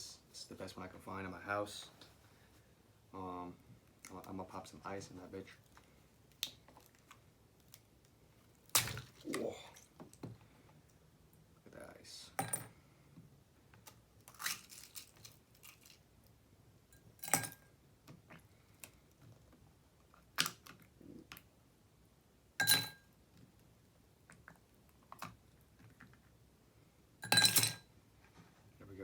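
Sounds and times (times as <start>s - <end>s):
faint small clicks and crackles: 5.5s - 8.7s, 13.7s - 16.4s, 18.0s - 21.5s.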